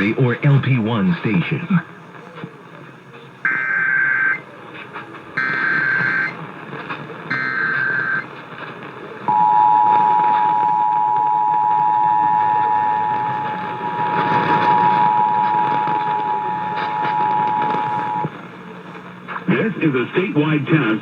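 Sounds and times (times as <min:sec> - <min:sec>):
radio static hiss: 0:00.0 - 0:21.0
data burst tones: 0:03.5 - 0:04.4, 0:05.4 - 0:06.5, 0:07.2 - 0:08.3, 0:09.3 - 0:18.3
two-tone attention signal: 0:05.4 - 0:06.4, 0:07.3 - 0:08.2, 0:09.3 - 0:18.3.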